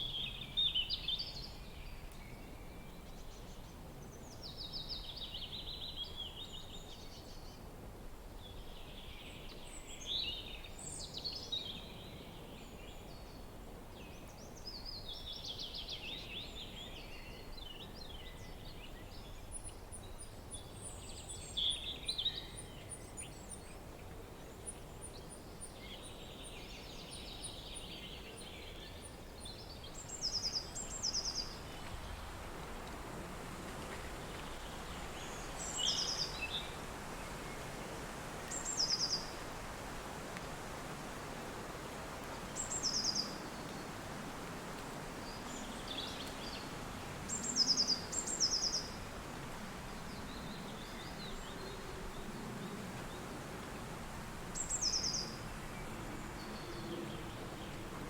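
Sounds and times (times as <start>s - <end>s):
steady wind: 0.0s - 58.0s
songbirds calling: 33.9s - 40.5s, 41.3s - 58.0s.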